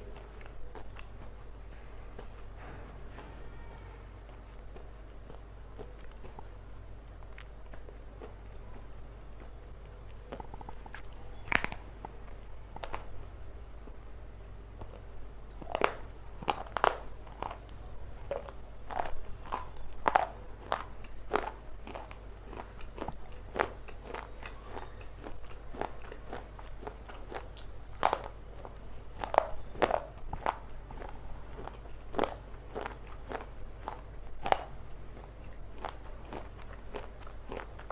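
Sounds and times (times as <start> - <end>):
crunchy chewing: 0.0 - 14.0, 14.7 - 37.9.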